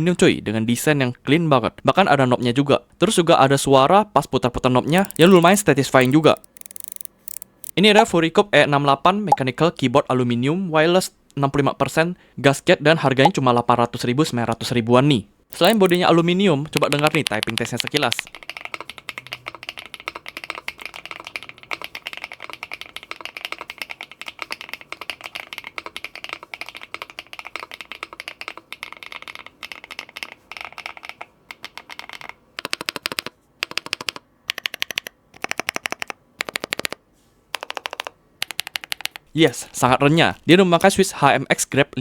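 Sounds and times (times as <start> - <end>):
mechanical keyboard key clacks: 4.9 - 7.7, 15.5 - 16.0, 16.7 - 37.0, 37.6 - 39.6.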